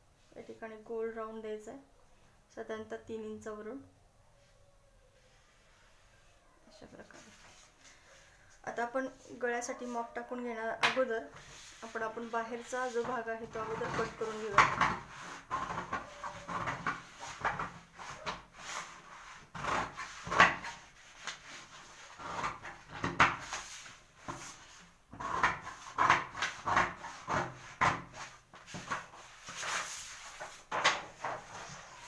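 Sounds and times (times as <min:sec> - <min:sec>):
paper rustling: 0:28.2 - 0:32.0.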